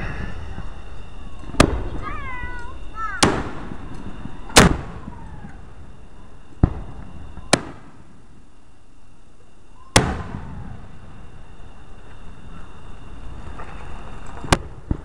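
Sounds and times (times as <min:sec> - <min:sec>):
fireworks exploding: 0:00.0 - 0:08.6, 0:09.4 - 0:15.0.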